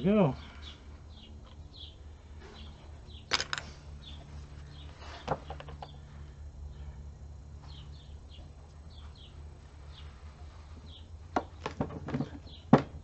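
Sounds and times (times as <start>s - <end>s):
steady low hum: 0.0s - 13.0s
bird chirps: 0.5s - 3.3s
metal tools clinking: 3.3s - 3.8s.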